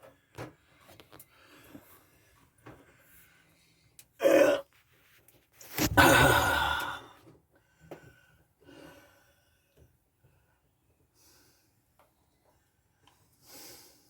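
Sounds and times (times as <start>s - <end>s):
man sighing heavily: 5.8s - 7.2s.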